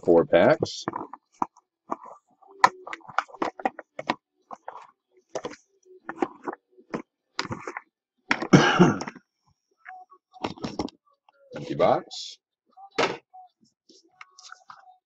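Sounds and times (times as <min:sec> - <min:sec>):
card packs tapping and crinkling: 0:02.6 - 0:09.2.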